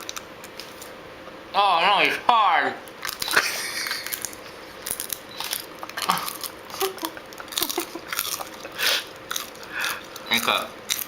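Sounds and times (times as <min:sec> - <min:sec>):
person chewing crunchy insect: 0:03.0 - 0:11.0.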